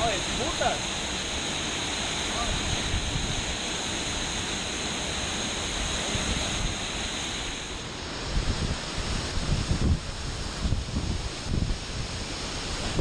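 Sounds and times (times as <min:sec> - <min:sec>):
waterfall roaring: 0:00.0 - 0:13.0
wind buffeting microphone: 0:02.4 - 0:03.7, 0:07.5 - 0:13.0.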